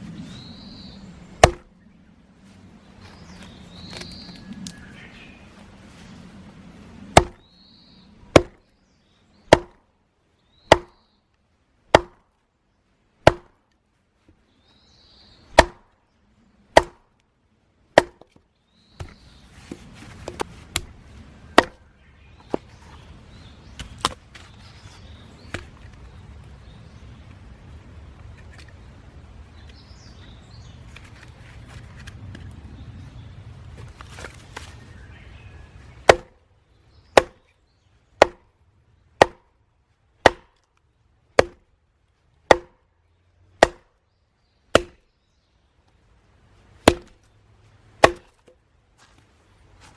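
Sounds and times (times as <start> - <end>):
low steady rumble: 0.0 - 14.5, 15.2 - 49.9
hatchet chopping wood: 1.4 - 1.7, 7.2 - 7.4, 8.3 - 8.7, 9.5 - 9.9, 10.7 - 11.0, 11.9 - 12.4, 13.2 - 13.6, 15.5 - 16.0, 16.7 - 17.1, 18.0 - 18.4, 19.0 - 21.8, 23.8 - 24.5, 36.0 - 36.4, 37.1 - 37.5, 38.2 - 38.5, 39.2 - 39.6, 40.2 - 40.7, 41.3 - 41.7, 42.4 - 42.8, 43.6 - 44.0, 44.7 - 45.1, 46.8 - 47.2, 48.0 - 48.6.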